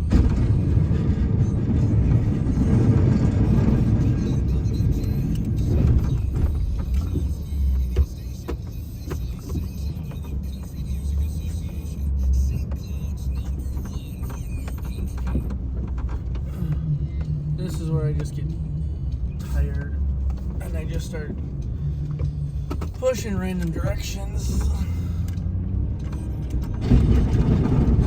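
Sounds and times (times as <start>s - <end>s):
knocks and clunks: 0.0s - 4.0s, 5.3s - 10.4s, 13.2s - 18.5s, 19.6s - 25.4s, 26.0s - 28.0s.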